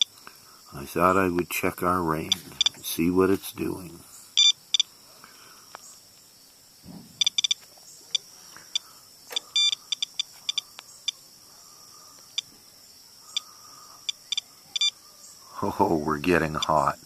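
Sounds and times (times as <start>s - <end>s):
geiger counter beeps: 2.3s - 2.9s, 4.4s - 4.9s, 7.2s - 11.2s, 13.3s - 15.0s, 16.5s - 17.0s.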